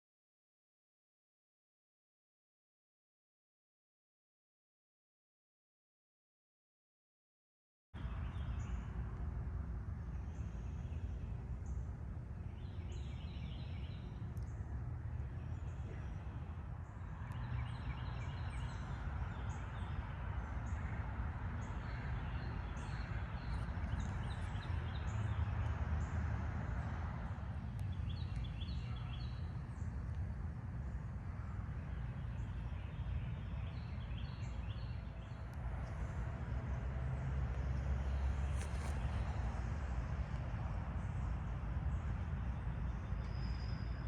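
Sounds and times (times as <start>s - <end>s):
steady low rumble: 8.0s - 44.0s
birds chirping: 10.1s - 36.9s.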